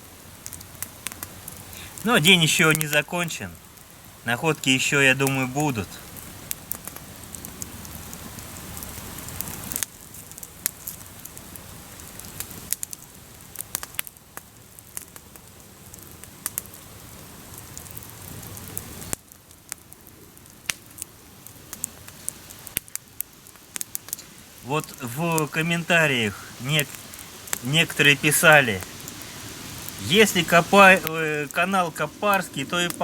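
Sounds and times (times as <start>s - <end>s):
campfire crackling and popping: 0.0s - 33.0s
steady fire hiss: 0.0s - 33.0s.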